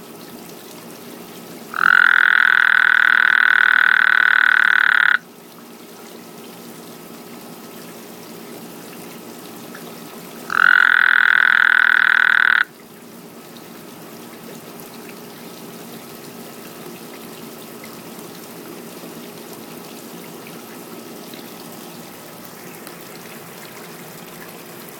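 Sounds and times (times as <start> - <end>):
water trickling: 0.0 - 24.9
frog croaking: 1.7 - 5.2, 10.5 - 12.7.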